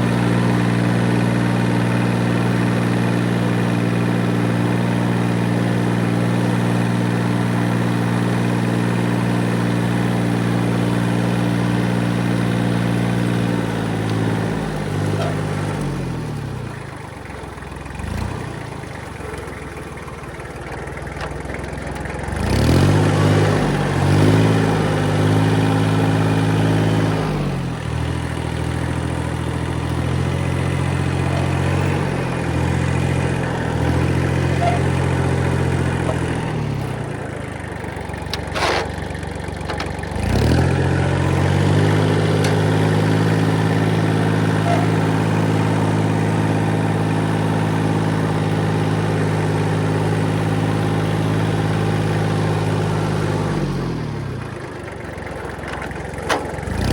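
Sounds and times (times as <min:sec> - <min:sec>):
diesel engine running under load: 0:00.0 - 0:56.9
sharp squeak: 0:34.5 - 0:35.0.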